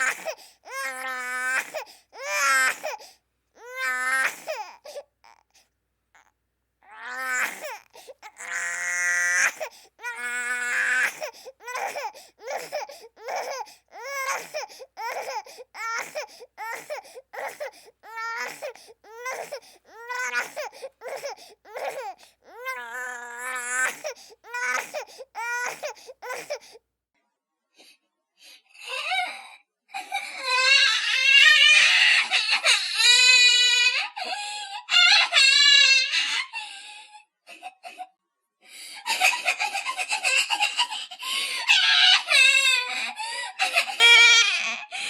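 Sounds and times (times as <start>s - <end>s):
infant crying: 0.0s - 5.6s, 6.2s - 26.8s, 40.2s - 45.0s.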